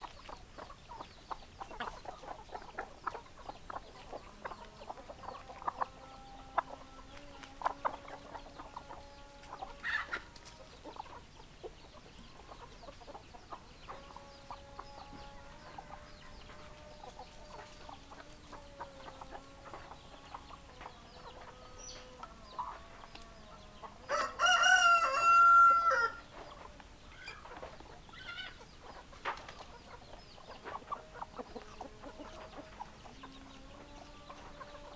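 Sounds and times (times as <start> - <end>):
hens clucking: 0.0 - 34.9
rooster crowing: 24.1 - 26.3.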